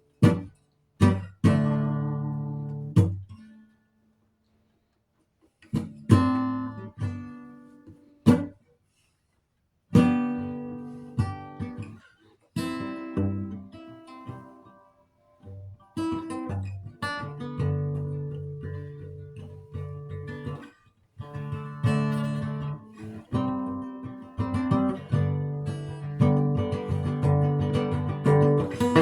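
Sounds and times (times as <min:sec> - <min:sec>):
acoustic guitar chords strummed: 0:21.2 - 0:29.0.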